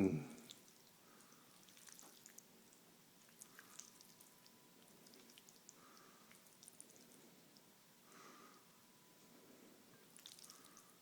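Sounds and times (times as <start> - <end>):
wet squelching of spaghetti: 0.3 - 7.7, 10.1 - 11.0.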